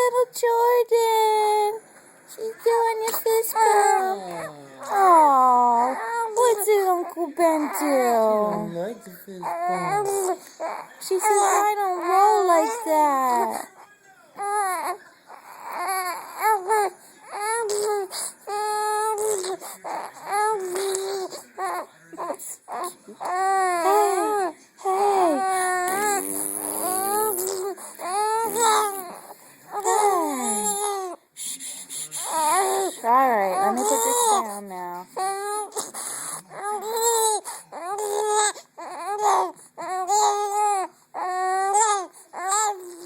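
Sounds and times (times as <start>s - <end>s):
baby crying: 2.4s - 13.8s, 14.4s - 31.2s, 32.2s - 43.0s.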